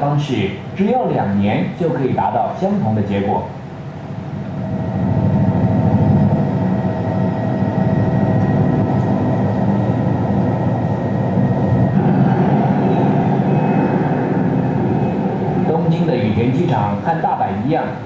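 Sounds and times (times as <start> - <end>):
large engine rumbling: 0.0 - 18.0
thin steady whine: 0.0 - 18.0.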